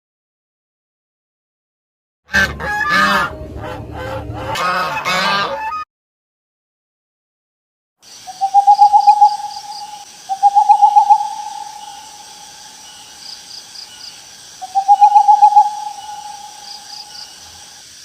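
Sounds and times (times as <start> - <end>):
faint insect chirping: 8.0 - 18.0.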